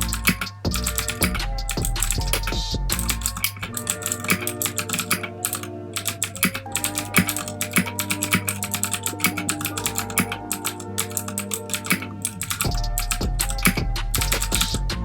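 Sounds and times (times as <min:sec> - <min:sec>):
background music with bass: 0:00.0 - 0:03.7, 0:12.6 - 0:15.0
mechanical keyboard typing clicks: 0:00.0 - 0:14.8.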